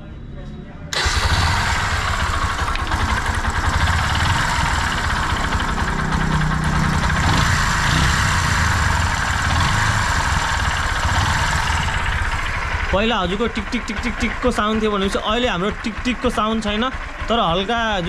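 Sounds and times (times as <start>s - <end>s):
motorcycle engine idling: 0.9s - 18.0s.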